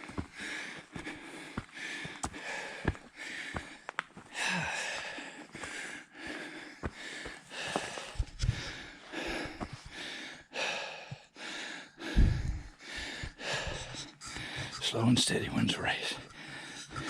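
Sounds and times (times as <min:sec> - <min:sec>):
man breathing hard: 0:00.0 - 0:17.0
low rumble on microphone: 0:12.0 - 0:14.1.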